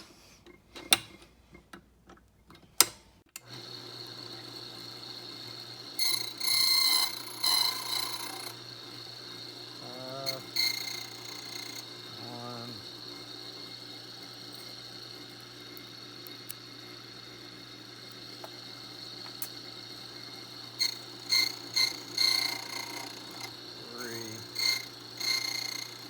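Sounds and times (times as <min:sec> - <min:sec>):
key-cutting machine motor whine: 0:03.4 - 0:26.0
cutter grinding into brass key: 0:20.8 - 0:26.0.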